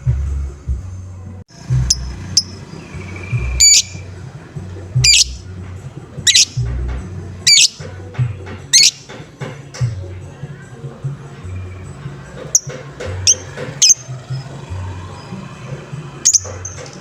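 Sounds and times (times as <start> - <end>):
music with bass beat: 0.0 - 10.3
lovebird harsh calls: 1.8 - 4.1, 4.9 - 5.5, 6.2 - 6.7, 7.4 - 7.9, 8.7 - 9.2, 12.5 - 14.5, 16.2 - 17.0
lovebird high chirps: 1.8 - 4.2, 5.0 - 5.5, 6.2 - 6.8, 7.4 - 7.9, 8.7 - 9.1, 12.5 - 14.5, 16.2 - 17.0.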